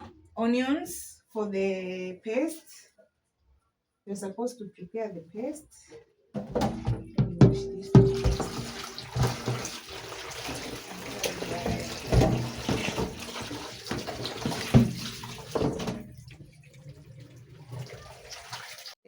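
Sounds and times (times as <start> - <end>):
tap water running into sink: 6.4 - 19.0.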